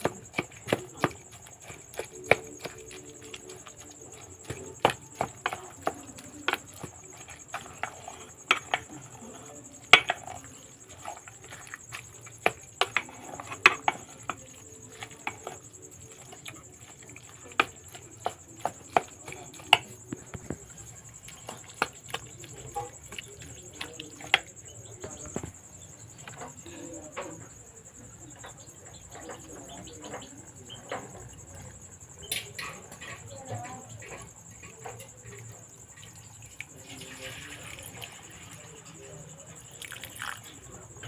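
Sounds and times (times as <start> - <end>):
sharp taps and knocks: 9.8 - 27.4.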